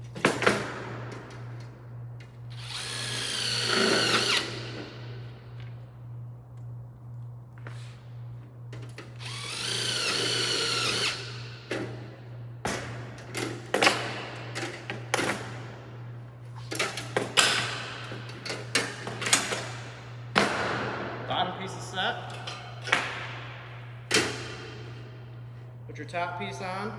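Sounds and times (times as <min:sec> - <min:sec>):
power drill whirring: 0:02.5 - 0:04.6, 0:09.2 - 0:11.4.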